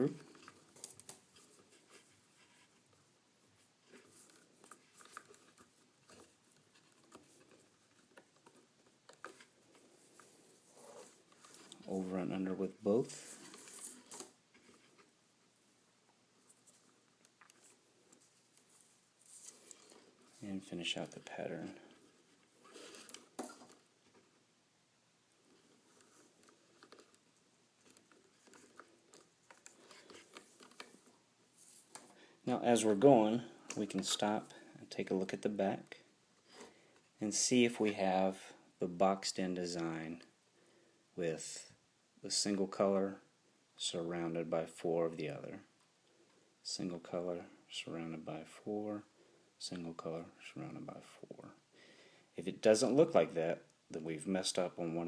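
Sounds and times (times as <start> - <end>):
paracord rustling and ticking: 0.0 - 15.2, 16.1 - 24.5, 25.3 - 37.2.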